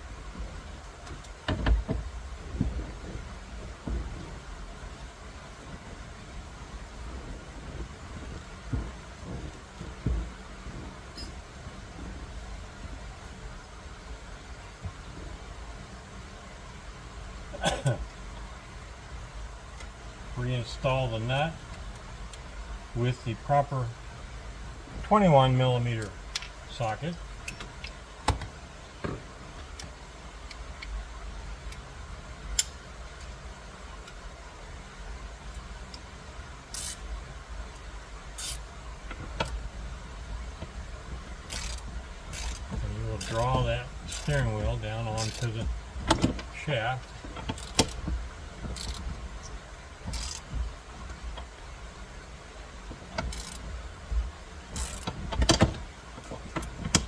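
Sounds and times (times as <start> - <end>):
metal clinks: 11.1 - 11.4, 26.3 - 26.7
ratchet clicking: 36.7 - 37.1, 41.5 - 44.5, 45.2 - 46.6, 47.4 - 48.0, 48.7 - 49.5, 50.1 - 50.5, 53.1 - 53.7, 54.8 - 55.8.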